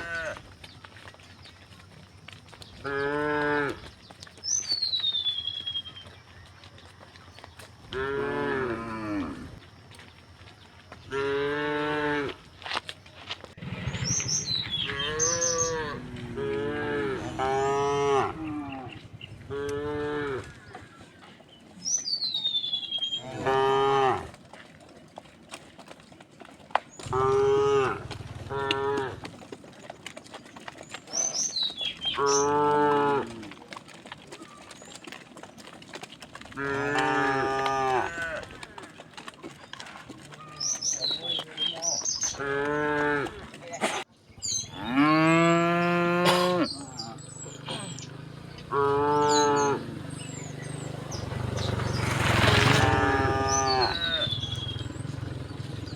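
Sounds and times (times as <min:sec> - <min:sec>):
cows mooing: 0:00.0 - 0:00.5, 0:02.8 - 0:03.9, 0:07.8 - 0:09.6, 0:11.1 - 0:12.4, 0:13.6 - 0:21.0, 0:23.0 - 0:24.4, 0:27.0 - 0:29.6, 0:31.1 - 0:33.8, 0:35.9 - 0:43.6, 0:44.5 - 0:55.9.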